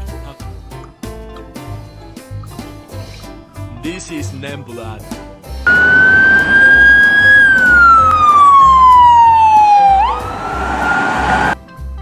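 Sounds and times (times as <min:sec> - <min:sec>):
siren wailing: 0:05.7 - 0:11.6.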